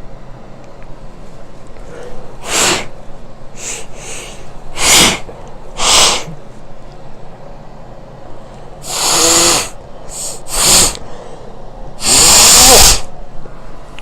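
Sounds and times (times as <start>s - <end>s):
person blowing nose: 2.4s - 2.9s, 3.6s - 6.4s, 8.8s - 11.0s, 12.0s - 13.1s.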